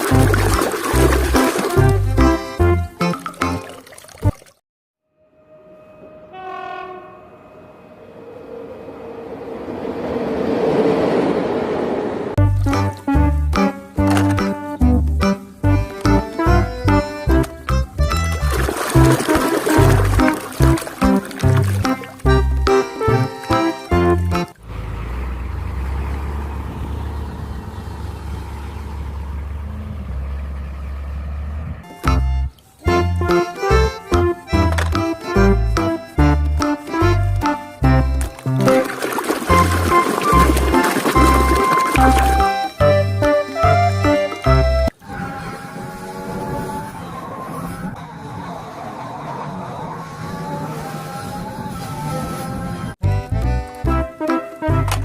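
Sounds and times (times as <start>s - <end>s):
train horn: 5.2s - 8.2s, 45.0s - 46.8s
train rumble: 6.0s - 12.7s
music with heavy bass: 12.4s - 19.1s.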